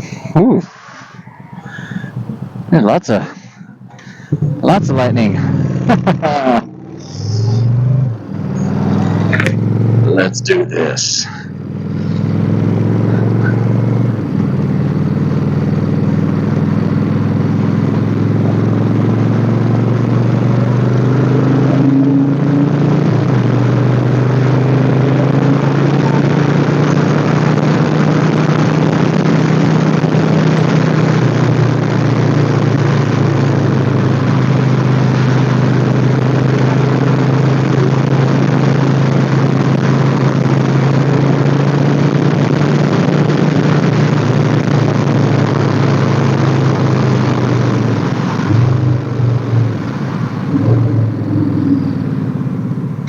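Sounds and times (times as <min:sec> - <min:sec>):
wind rush: 0:00.0 - 0:05.8
motorcycle engine cruising: 0:00.0 - 0:53.0.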